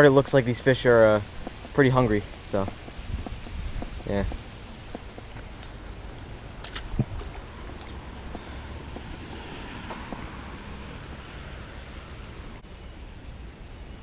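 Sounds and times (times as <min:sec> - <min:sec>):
raindrop taps: 0:00.7 - 0:09.2.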